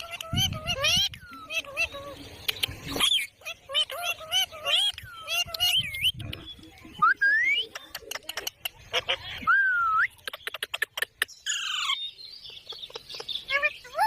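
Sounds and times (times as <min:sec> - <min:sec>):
parakeet chattering: 0:00.0 - 0:06.6, 0:07.7 - 0:09.4, 0:10.1 - 0:14.0
sharp bird clicks: 0:02.3 - 0:03.3.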